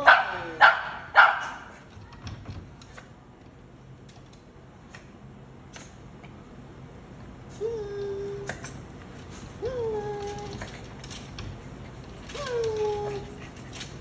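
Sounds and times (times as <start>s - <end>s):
small dog barking: 0.0s - 1.7s.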